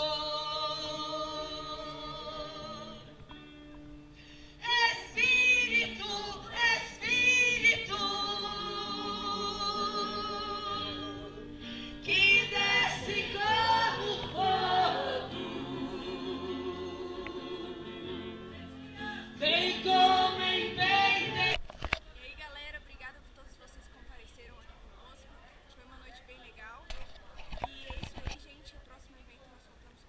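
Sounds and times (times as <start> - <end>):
person singing with vibrato: 0.0 - 3.2, 4.4 - 21.6.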